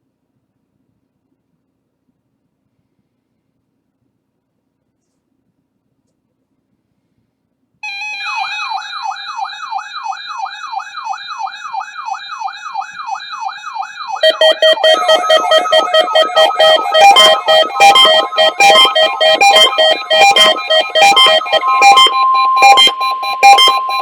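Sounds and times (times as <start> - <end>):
electronic alarm tone sweeping: 7.8 - 24.0
pulsing synthesized keyboard pattern: 11.4 - 24.0.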